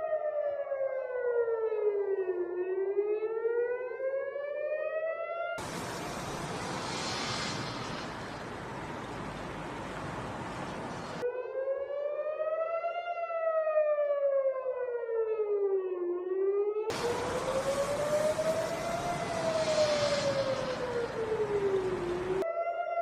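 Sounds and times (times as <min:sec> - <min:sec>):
warning siren wailing: 0:00.0 - 0:23.0
hiss of street noise: 0:05.6 - 0:11.2, 0:16.9 - 0:22.4.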